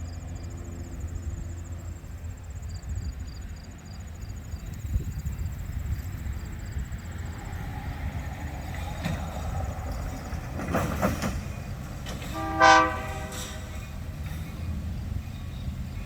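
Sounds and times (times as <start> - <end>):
train rumble: 0.0 - 16.0
locomotive horn blast: 12.1 - 13.9.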